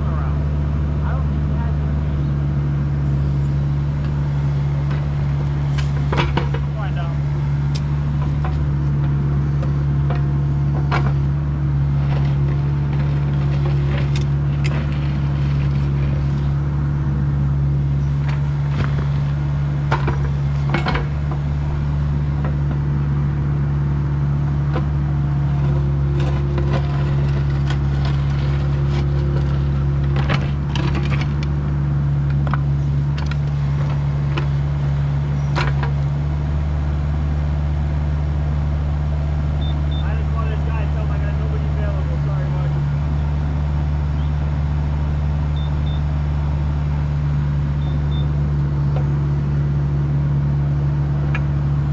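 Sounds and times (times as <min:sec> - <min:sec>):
diesel engine running: 0:00.0 - 0:51.9
short knocks and scrapes: 0:03.9 - 0:16.7, 0:17.8 - 0:23.1, 0:24.5 - 0:36.6.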